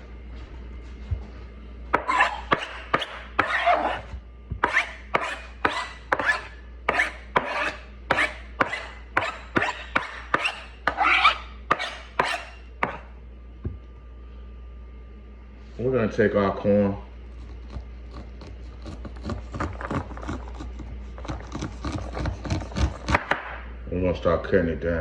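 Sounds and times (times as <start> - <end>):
rasping scraping strokes: 2.0 - 13.0, 17.3 - 23.2.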